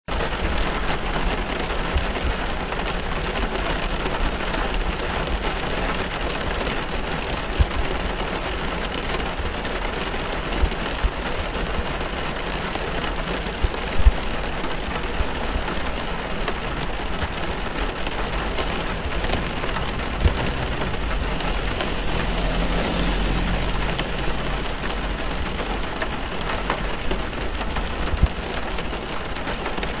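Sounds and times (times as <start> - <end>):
heavy raindrop thuds: 0.1 - 30.0
rain on car roof: 0.1 - 30.0
low rumble: 16.9 - 28.8.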